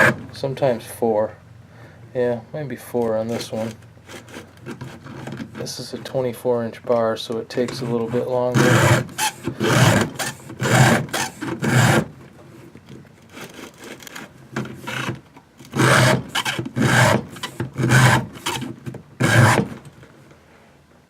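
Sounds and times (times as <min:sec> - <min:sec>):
file rasping on saw chain: 0:03.3 - 0:05.3, 0:07.8 - 0:12.1, 0:15.7 - 0:19.7.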